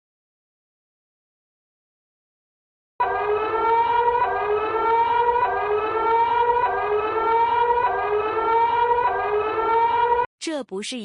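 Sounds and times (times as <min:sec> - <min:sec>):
emergency siren whooping: 0:03.0 - 0:10.3.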